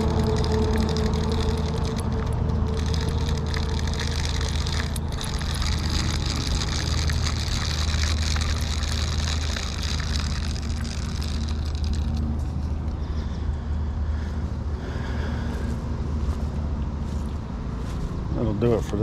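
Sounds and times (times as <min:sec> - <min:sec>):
low engine hum: 0:00.0 - 0:19.0.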